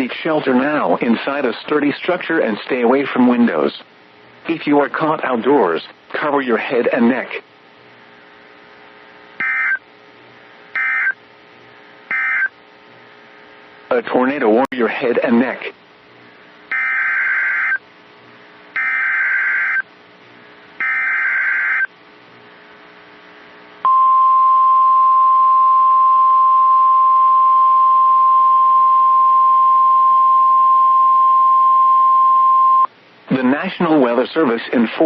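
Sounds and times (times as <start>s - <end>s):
steady warning alarm tone: 9.4s - 9.8s, 10.8s - 11.2s, 12.1s - 12.6s, 16.7s - 17.8s, 18.8s - 19.9s, 20.8s - 21.9s.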